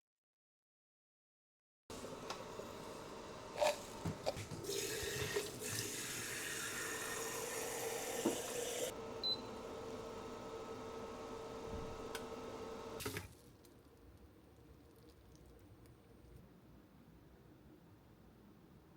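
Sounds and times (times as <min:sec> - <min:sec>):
tap running into a sink: 0:03.9 - 0:08.9.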